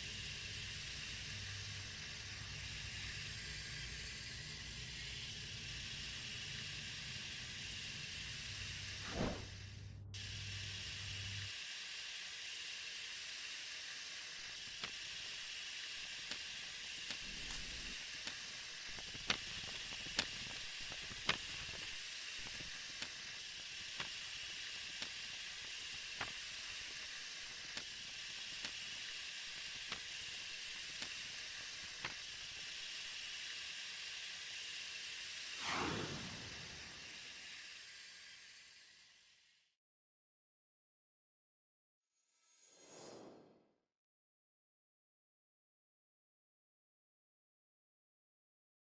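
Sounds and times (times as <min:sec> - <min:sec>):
steady hiss: 0:00.0 - 0:39.6
crackles and pops: 0:16.0 - 0:32.9.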